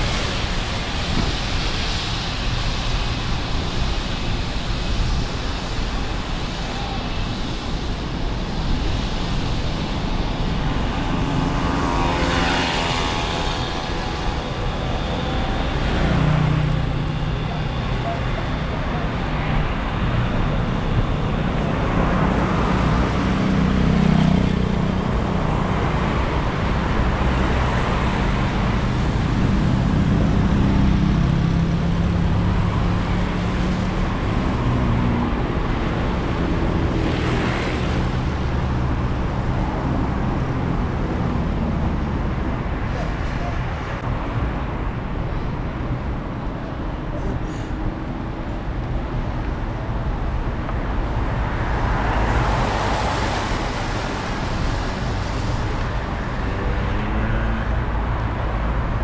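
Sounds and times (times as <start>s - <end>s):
cars passing: 0.0s - 59.0s
engines rumbling low: 0.0s - 59.0s
rain hiss on wet road: 52.2s - 56.5s.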